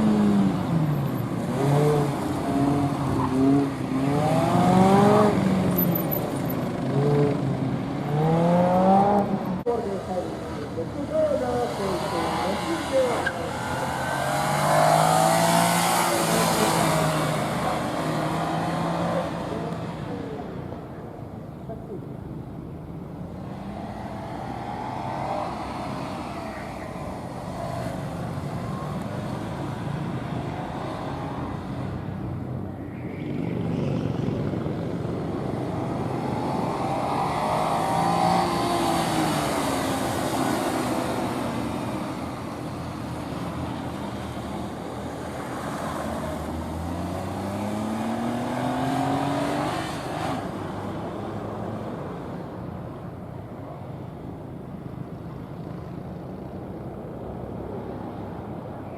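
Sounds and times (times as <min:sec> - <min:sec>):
car engine revving: 0:00.0 - 0:09.8, 0:11.5 - 0:19.8.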